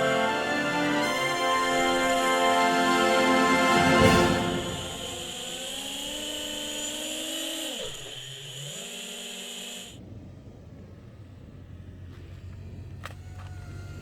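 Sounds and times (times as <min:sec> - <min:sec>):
drone motors whining: 0:00.0 - 0:10.0, 0:11.7 - 0:14.0
faint low hum: 0:04.4 - 0:14.0.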